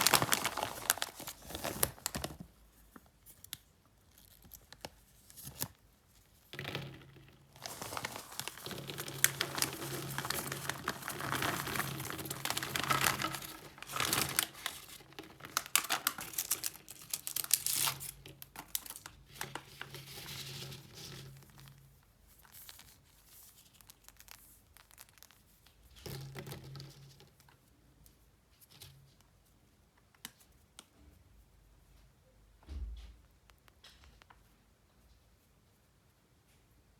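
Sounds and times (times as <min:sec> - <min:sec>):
plastic wrappers crinkling: 0:00.0 - 0:05.8, 0:07.4 - 0:26.0.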